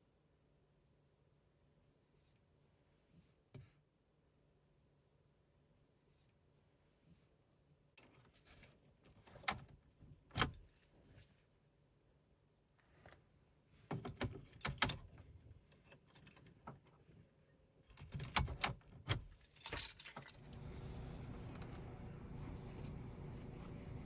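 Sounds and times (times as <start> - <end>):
keys clinking: 19.4 - 24.0
steady low hum: 20.3 - 24.0.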